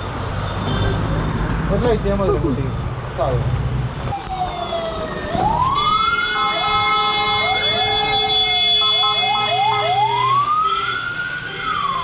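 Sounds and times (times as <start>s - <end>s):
siren wailing: 4.1s - 12.0s.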